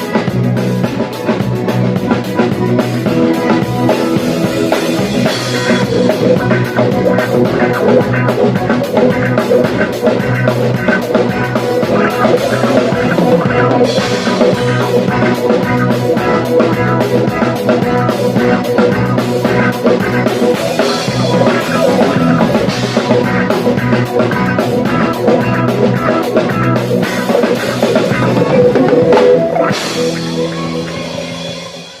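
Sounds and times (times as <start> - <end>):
accordion: 0.0 - 32.0
drum kit beat: 0.0 - 32.0.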